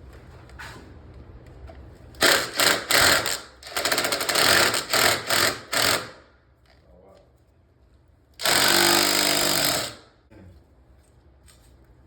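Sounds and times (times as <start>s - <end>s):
jackhammer hammering concrete: 2.2s - 6.2s, 8.4s - 10.1s.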